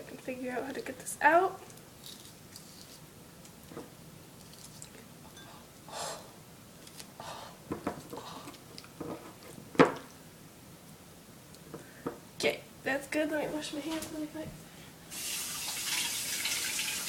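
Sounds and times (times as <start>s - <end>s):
soft squishing of fruit: 1.6s - 5.2s.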